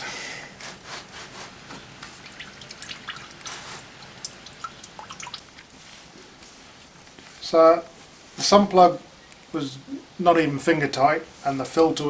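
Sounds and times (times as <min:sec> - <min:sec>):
oil dripping into a pan: 0:01.8 - 0:05.8.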